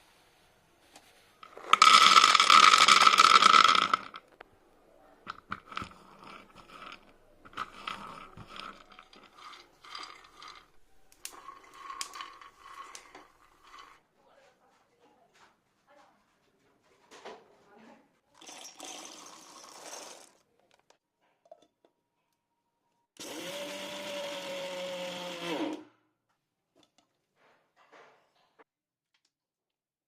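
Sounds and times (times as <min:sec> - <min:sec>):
peanuts rattling in a pan: 0:01.4 - 0:04.2, 0:05.5 - 0:14.0.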